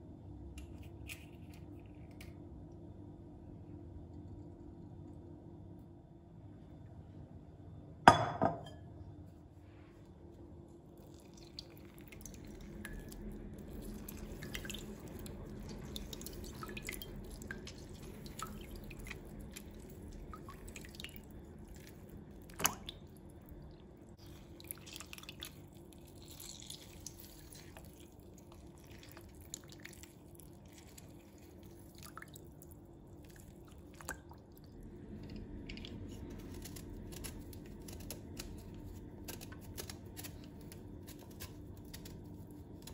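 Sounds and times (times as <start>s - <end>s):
low steady hum: 0.0s - 42.9s.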